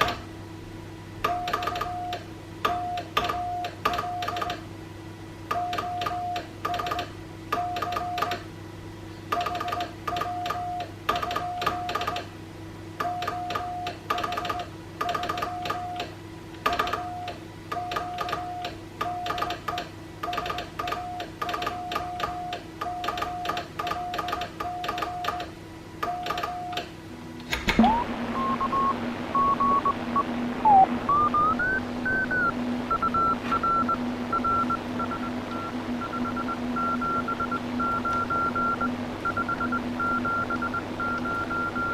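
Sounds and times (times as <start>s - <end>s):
steady low hum: 0.0s - 13.9s, 14.6s - 41.9s
morse code tone: 27.8s - 41.9s.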